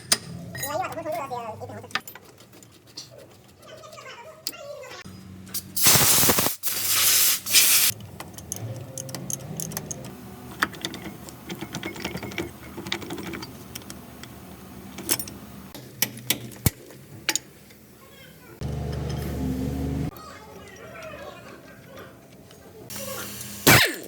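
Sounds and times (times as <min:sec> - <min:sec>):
loud hiss: 0:05.8 - 0:07.9.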